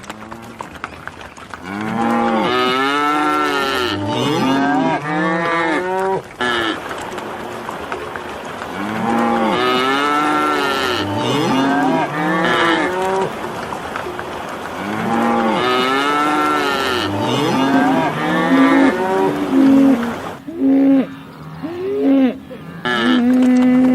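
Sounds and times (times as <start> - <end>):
cattle mooing: 1.6 - 6.8, 8.8 - 13.3, 14.8 - 23.9.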